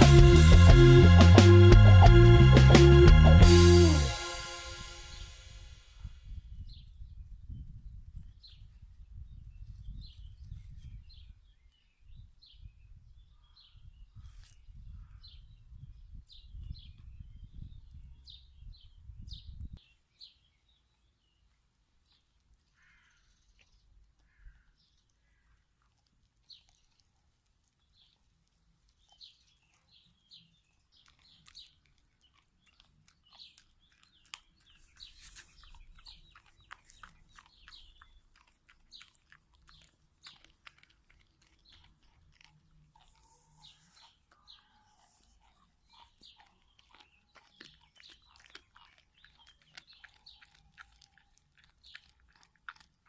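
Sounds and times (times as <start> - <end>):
small birds chirping: 4.1 - 53.0
dogs chewing and crunching: 22.0 - 53.0.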